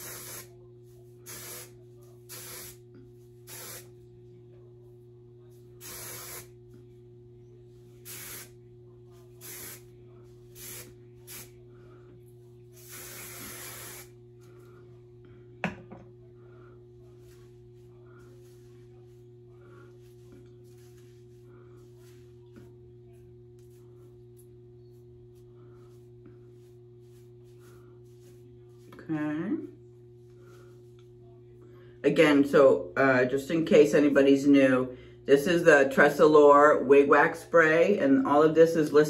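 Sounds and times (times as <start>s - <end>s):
aerosol spray hissing bursts: 0.0s - 0.5s, 1.3s - 2.8s, 3.5s - 3.9s, 5.8s - 6.6s, 8.0s - 8.6s, 9.4s - 9.9s, 10.6s - 11.5s, 12.8s - 14.2s.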